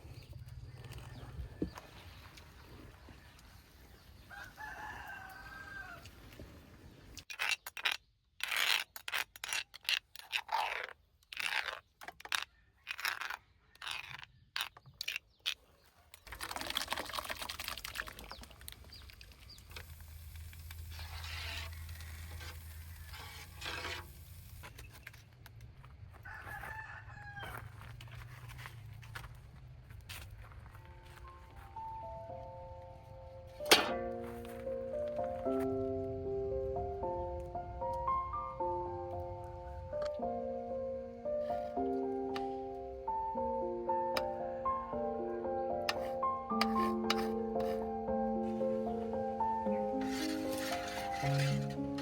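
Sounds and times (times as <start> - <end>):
rooster crowing: 4.3 - 6.1, 26.2 - 27.9.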